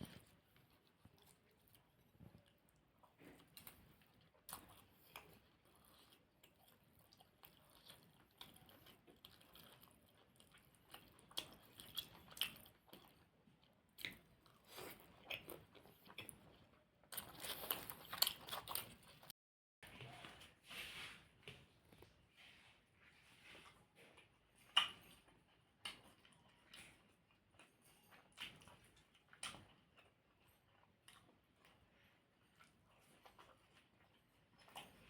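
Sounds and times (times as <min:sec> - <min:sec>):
biting and chewing food: 0:00.0 - 0:20.2, 0:23.4 - 0:35.0.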